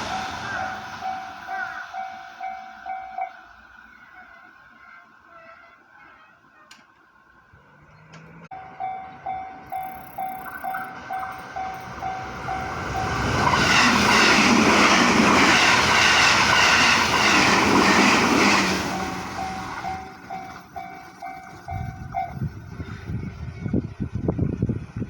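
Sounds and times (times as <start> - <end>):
level-crossing alarm dinging: 0.0 - 4.6, 8.5 - 22.6
train wheels on rails: 0.0 - 25.0.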